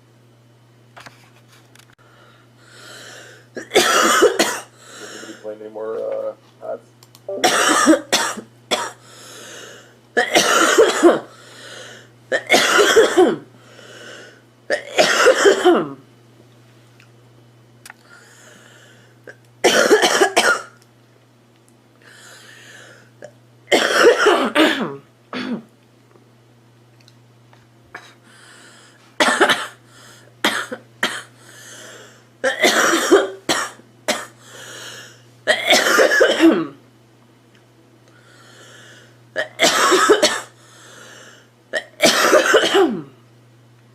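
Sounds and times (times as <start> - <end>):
girl coughing: 3.6 - 4.7, 7.4 - 9.0, 10.2 - 11.3, 12.3 - 13.5, 14.7 - 16.0, 19.3 - 20.8, 23.7 - 25.7, 29.2 - 29.8, 30.4 - 31.3, 32.4 - 34.3, 35.5 - 36.8, 39.4 - 40.5, 41.8 - 43.1.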